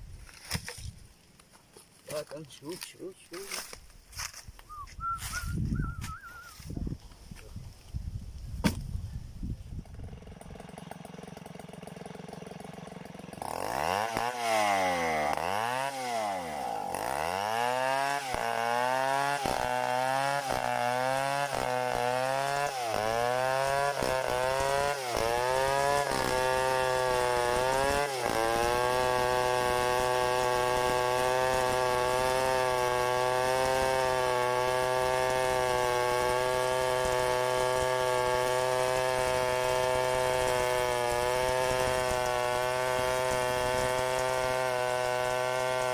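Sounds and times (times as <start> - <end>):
chainsaw revving: 9.7 - 45.9.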